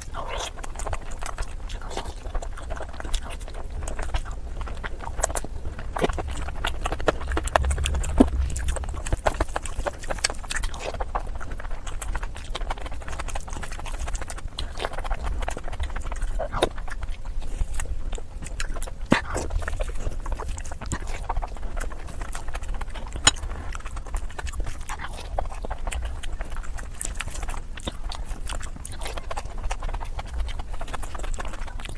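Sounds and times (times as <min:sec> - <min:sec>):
chewing and mouth smacking: 0:00.0 - 0:31.9.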